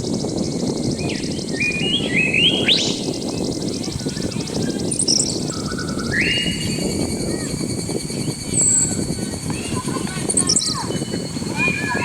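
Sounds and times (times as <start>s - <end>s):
birds calling: 0.0s - 12.0s
pulsing insect trill: 0.0s - 12.0s.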